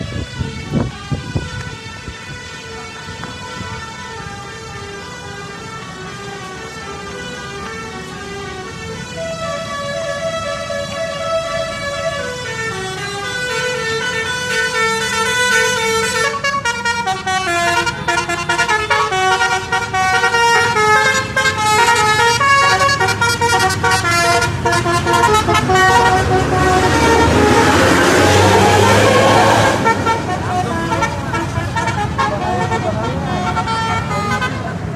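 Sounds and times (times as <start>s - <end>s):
multi-tone bus horn tune: 0.0s - 34.9s
rushing noise: 24.4s - 31.3s.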